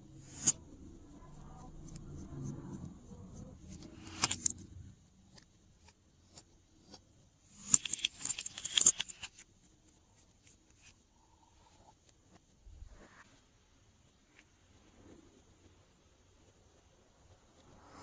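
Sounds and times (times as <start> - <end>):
plastic pieces clicking and rattling: 7.6 - 9.4.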